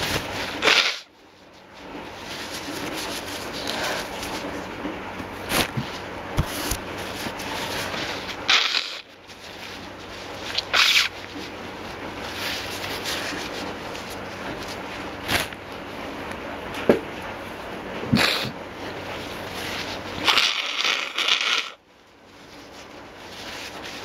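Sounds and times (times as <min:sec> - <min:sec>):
person sneezing: 0:18.1 - 0:18.6
person sniffing: 0:18.2 - 0:18.6.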